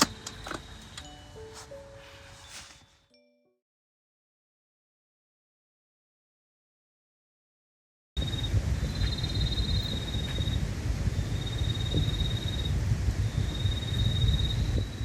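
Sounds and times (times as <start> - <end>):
low rumble: 8.2 - 15.0.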